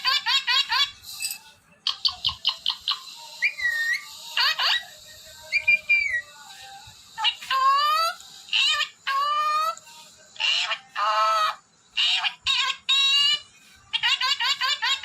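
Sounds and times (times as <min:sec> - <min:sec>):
parrot whistled calls: 0:00.1 - 0:06.4, 0:07.1 - 0:09.8.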